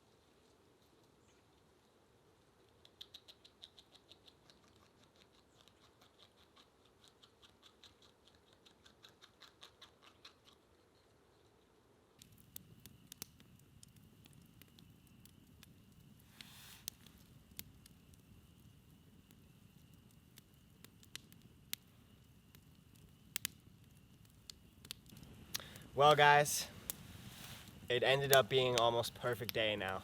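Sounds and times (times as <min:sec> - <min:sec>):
low hiss: 0:10.9 - 0:30.0.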